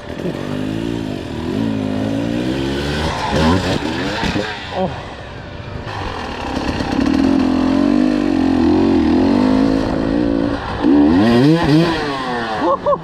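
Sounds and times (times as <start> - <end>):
dirt bike engine revving: 0.0 - 13.0.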